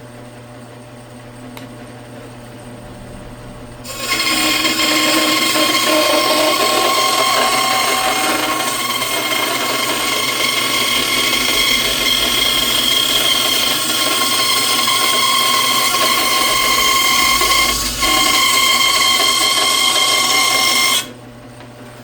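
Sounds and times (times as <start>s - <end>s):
high whine: 2.0s - 21.1s
scroll saw cutting wood: 3.8s - 21.2s.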